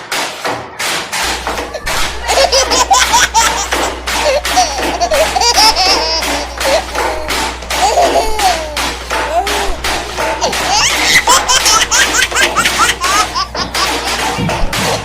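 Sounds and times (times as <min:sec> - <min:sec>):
steady low hum: 0:01.2 - 0:15.0
laughter: 0:02.2 - 0:06.8.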